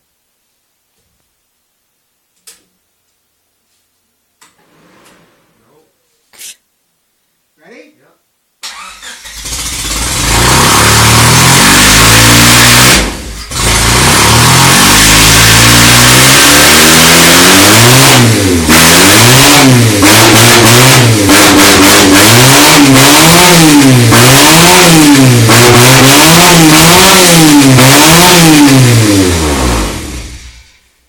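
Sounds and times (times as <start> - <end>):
race car engine revving: 8.7 - 30.6.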